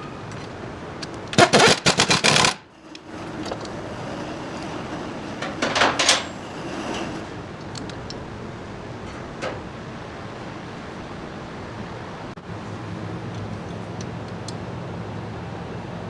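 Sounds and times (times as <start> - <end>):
rapid metallic rattling of tools: 1.4 - 7.4.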